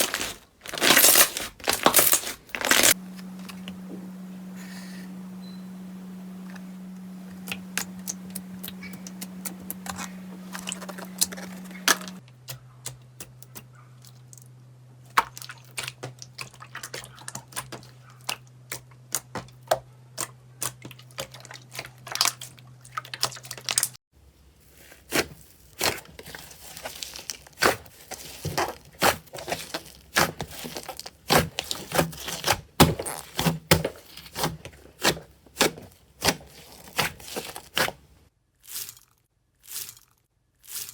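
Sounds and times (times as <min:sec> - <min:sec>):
faint low hum: 0:02.7 - 0:14.8.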